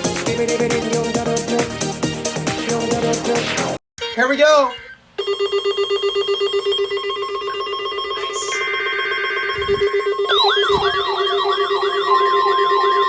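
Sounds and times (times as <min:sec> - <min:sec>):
pulsing buzzing alarm: 0:05.2 - 0:13.0
wailing siren: 0:08.2 - 0:13.0.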